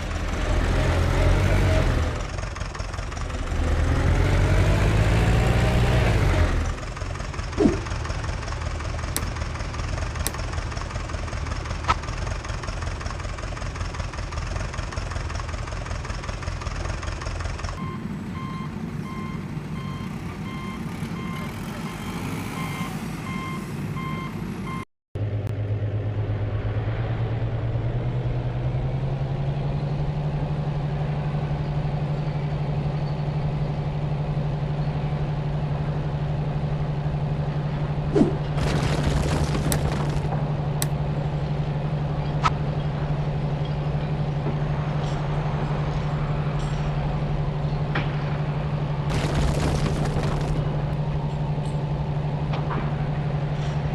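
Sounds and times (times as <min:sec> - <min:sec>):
engine revving under load: 0:00.0 - 0:02.3, 0:03.2 - 0:06.9
heavy diesel machinery running: 0:00.0 - 0:53.9
reversing alarm beeping: 0:17.8 - 0:24.8.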